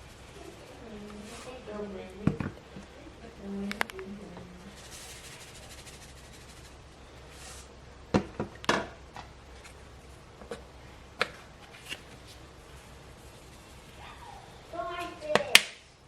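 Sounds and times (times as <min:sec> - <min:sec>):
faint steady hiss: 0:00.0 - 0:16.0
objects knocking and clicking: 0:02.2 - 0:02.9.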